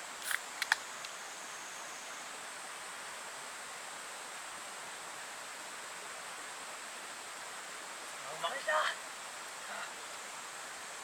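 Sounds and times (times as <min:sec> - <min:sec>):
outdoor background hiss: 0:00.0 - 0:11.0.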